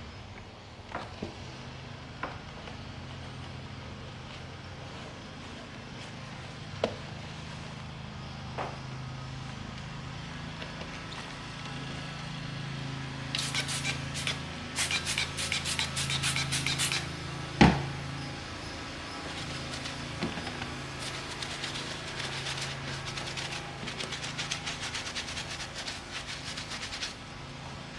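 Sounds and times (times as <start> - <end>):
low engine hum: 0.0 - 27.9
scrubbing on leather glove: 13.4 - 17.2, 19.0 - 27.9.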